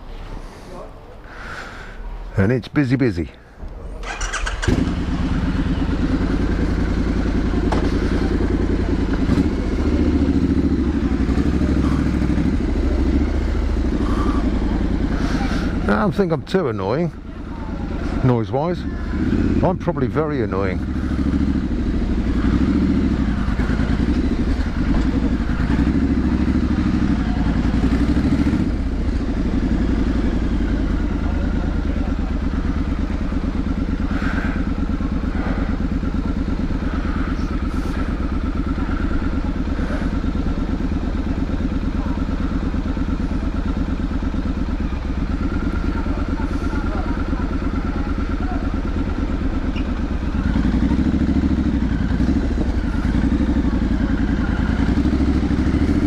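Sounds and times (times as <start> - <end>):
motorcycle engine and exhaust: 3.2 - 56.0.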